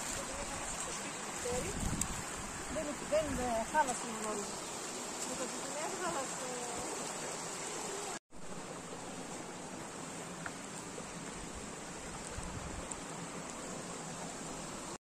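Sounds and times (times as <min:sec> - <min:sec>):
running water rushing: 0:00.0 - 0:15.0.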